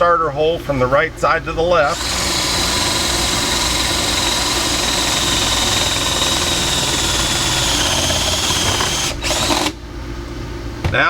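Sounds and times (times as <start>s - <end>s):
electric drill boring wood: 1.8s - 9.8s.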